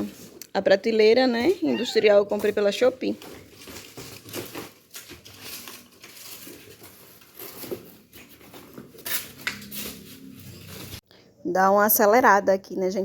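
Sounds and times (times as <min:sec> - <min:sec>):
packaging rustling and scratching: 0:01.9 - 0:11.0.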